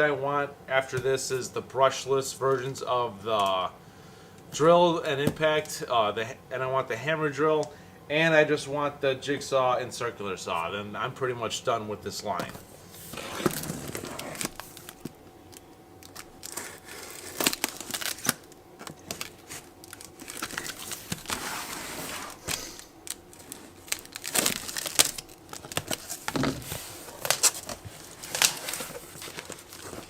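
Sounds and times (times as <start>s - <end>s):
packaging rustling and crinkling: 12.4s - 30.0s
packaging tearing: 13.0s - 30.0s.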